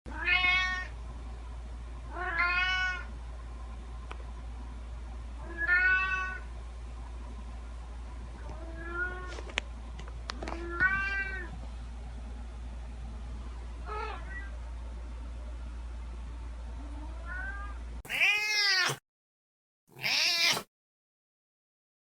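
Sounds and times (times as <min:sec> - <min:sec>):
cat meowing: 0:17.3 - 0:19.0, 0:19.9 - 0:20.7.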